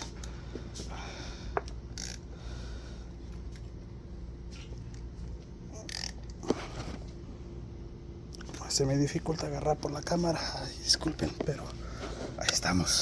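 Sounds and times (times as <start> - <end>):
socket ratchet clicking: 1.9 - 2.2.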